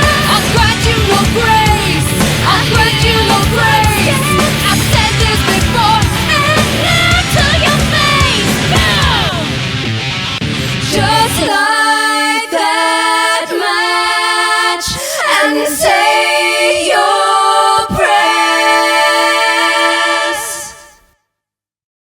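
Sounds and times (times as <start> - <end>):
women singing in harmony: 0.0 - 9.5, 10.9 - 21.1
full band playing: 0.0 - 11.2.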